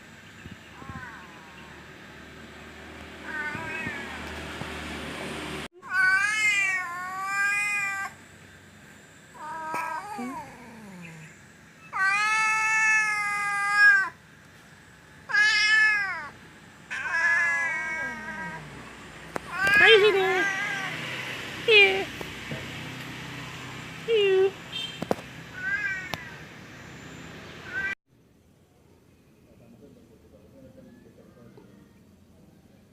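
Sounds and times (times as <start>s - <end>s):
cat meowing: 3.2s - 4.2s, 5.8s - 8.2s, 11.9s - 14.2s, 15.3s - 18.8s, 19.4s - 21.0s, 25.5s - 26.4s, 27.7s - 28.0s.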